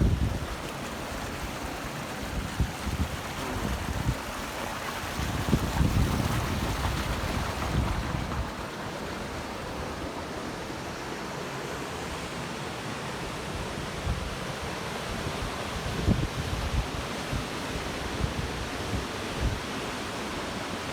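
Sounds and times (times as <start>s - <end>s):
wind buffeting microphone: 0.0s - 10.0s, 15.0s - 19.8s
rushing water: 0.0s - 20.9s.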